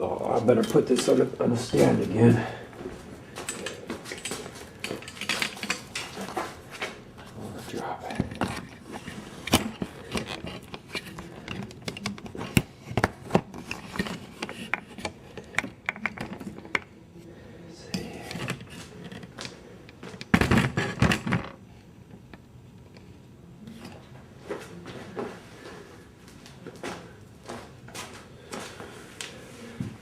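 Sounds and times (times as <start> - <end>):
handling clicks and knocks: 3.4 - 6.6.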